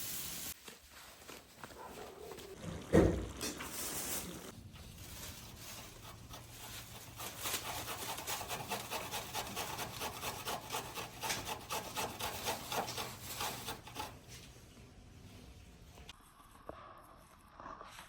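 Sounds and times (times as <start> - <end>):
rhythmic scraping strokes: 4.9 - 14.3.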